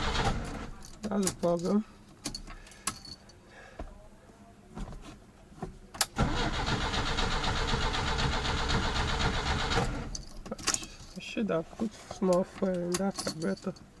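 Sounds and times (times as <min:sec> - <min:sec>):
starter cranking engine: 0:00.0 - 0:00.7, 0:06.2 - 0:10.2.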